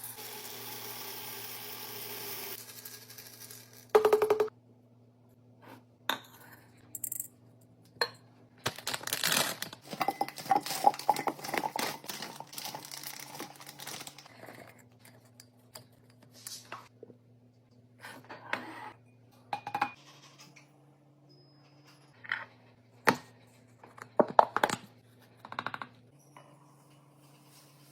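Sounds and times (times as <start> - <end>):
packaging crinkling: 8.6 - 14.3
household items clinking and rattling: 8.6 - 16.0.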